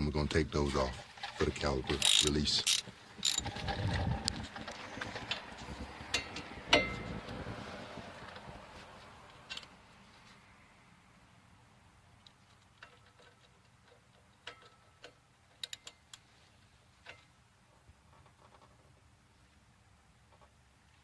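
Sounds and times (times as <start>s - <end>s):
ratchet clicking: 2.0s - 3.6s, 15.6s - 16.2s.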